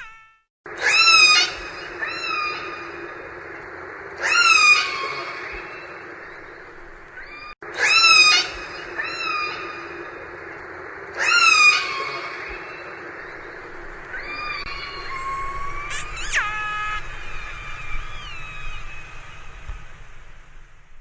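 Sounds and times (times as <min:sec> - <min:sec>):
steady hiss: 0:08.2 - 0:21.0
orca calls underwater: 0:14.2 - 0:18.4.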